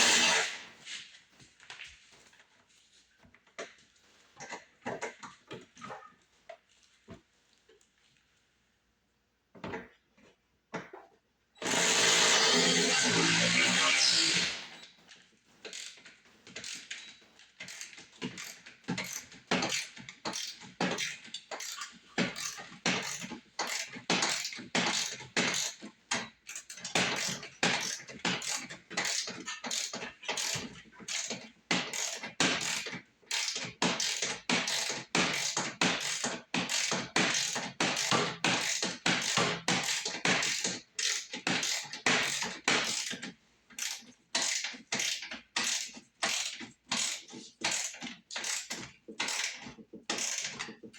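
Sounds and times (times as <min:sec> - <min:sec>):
power tool running: 0:00.0 - 0:00.6, 0:11.6 - 0:14.8
ratchet clicking: 0:43.8 - 0:50.6.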